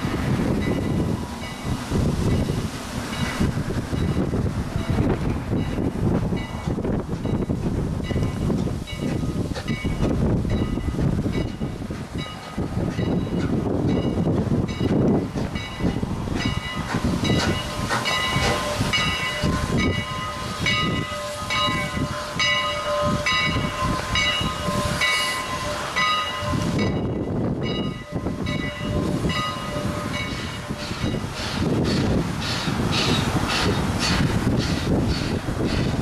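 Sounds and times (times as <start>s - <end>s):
steam locomotive chuffing: 0.0s - 36.0s
locomotive bell ringing: 0.5s - 32.2s.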